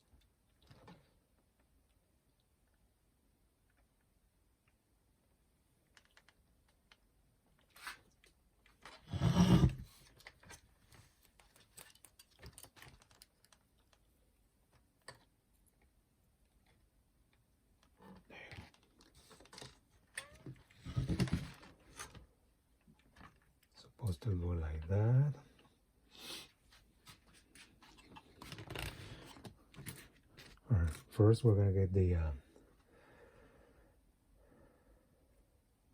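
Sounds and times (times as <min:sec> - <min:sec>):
light clicks of small parts: 0:05.8 - 0:08.9, 0:10.0 - 0:20.3.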